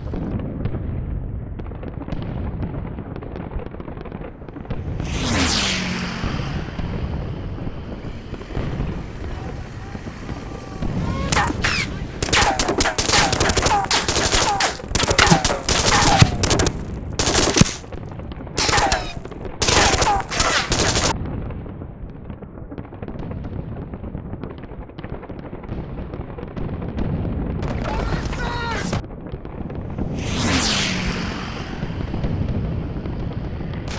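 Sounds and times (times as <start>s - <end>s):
machine-gun fire: 11.3s - 21.2s.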